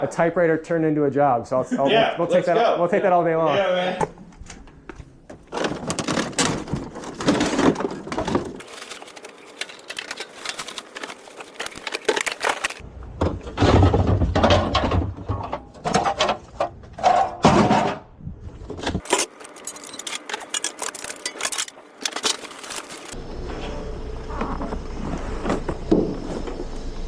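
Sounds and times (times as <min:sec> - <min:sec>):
junk clattering and knocking: 0:05.3 - 0:23.1
low hum: 0:22.6 - 0:27.0.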